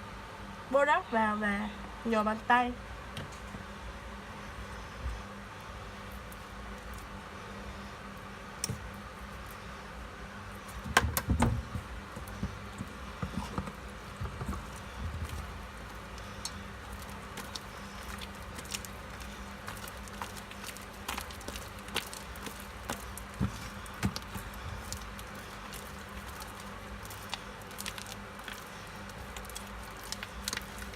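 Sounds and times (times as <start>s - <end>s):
slime squelching when kneaded: 11.6s - 30.9s.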